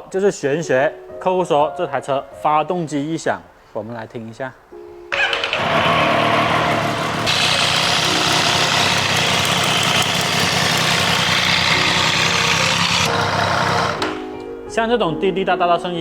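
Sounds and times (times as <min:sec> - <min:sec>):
motorcycle engine idling: 0:05.2 - 0:14.0
ticking rattle: 0:05.2 - 0:14.0.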